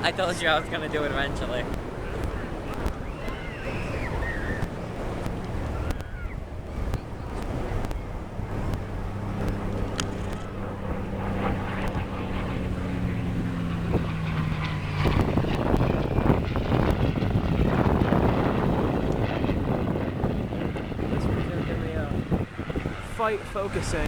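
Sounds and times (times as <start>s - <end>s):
piston aircraft engine droning: 0.0s - 24.0s
wind buffeting microphone: 0.0s - 24.0s.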